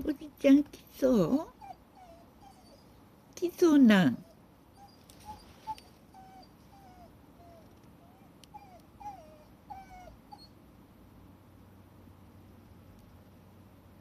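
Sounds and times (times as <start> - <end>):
dog whining: 1.4 - 3.0, 4.2 - 10.6.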